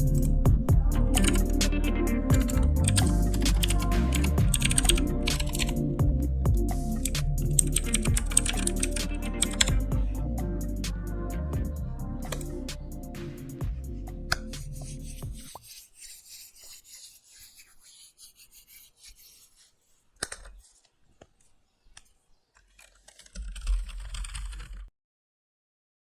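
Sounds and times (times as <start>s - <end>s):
background music: 0.0s - 15.6s
rubbing and scratching noises: 0.0s - 24.9s
sharp clicks: 2.4s - 5.8s, 6.9s - 10.0s, 12.2s - 12.5s
loud rough rubbing noise: 14.4s - 20.0s.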